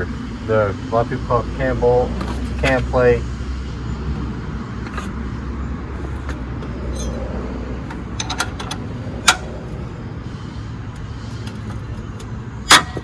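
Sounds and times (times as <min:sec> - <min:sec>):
light metal clicks: 0:04.2 - 0:09.9.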